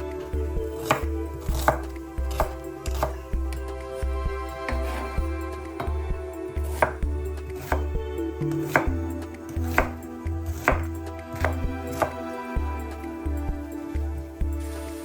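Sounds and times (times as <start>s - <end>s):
soft background music: 0.0s - 15.0s
knife chopping on cutting board: 0.8s - 3.2s, 6.7s - 7.0s, 7.6s - 7.9s, 8.6s - 8.9s, 9.7s - 12.2s.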